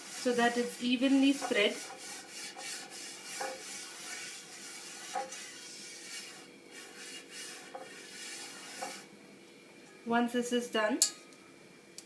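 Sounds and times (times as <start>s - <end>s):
brush rubbing on pan: 0.0s - 9.1s.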